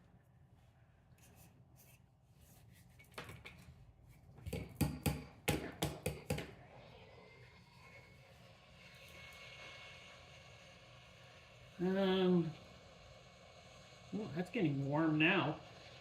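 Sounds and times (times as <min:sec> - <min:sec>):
faint whir with thin tone: 0:06.5 - 0:16.0.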